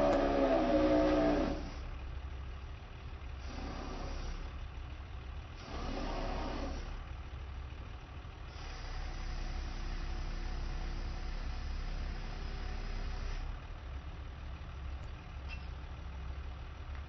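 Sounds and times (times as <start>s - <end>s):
truck engine idling: 0.0s - 17.0s.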